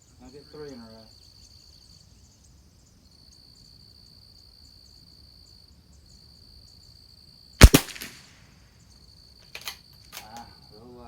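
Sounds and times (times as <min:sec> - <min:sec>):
insects trilling: 0:00.0 - 0:07.9.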